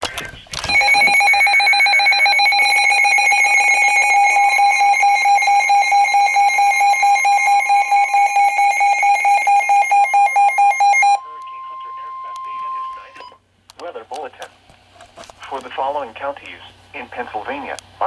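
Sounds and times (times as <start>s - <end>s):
shrill pulsing electronic alarm tone: 0.7s - 13.4s.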